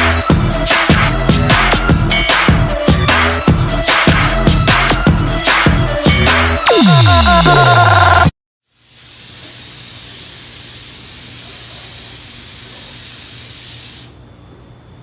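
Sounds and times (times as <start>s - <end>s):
spray paint hissing: 8.7s - 14.2s.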